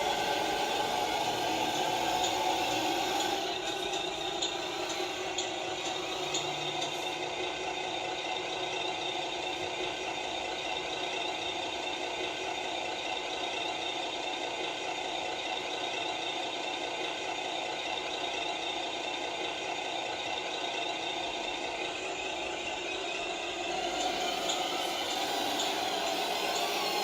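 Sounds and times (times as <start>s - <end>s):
model truck motor whirring: 0.0s - 27.0s.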